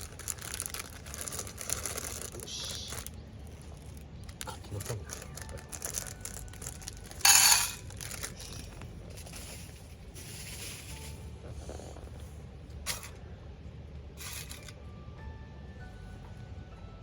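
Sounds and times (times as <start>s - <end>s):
plastic packet crinkling: 0.0s - 9.8s.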